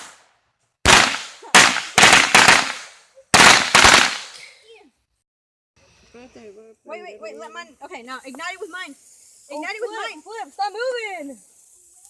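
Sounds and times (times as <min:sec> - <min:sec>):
fireworks bangs: 0:00.8 - 0:04.5.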